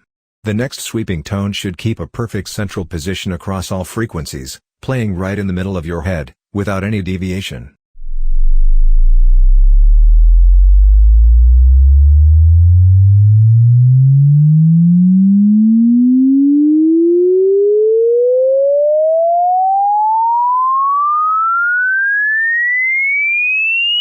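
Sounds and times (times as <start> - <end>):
sine tone sweeping upward: 8.0 - 24.0.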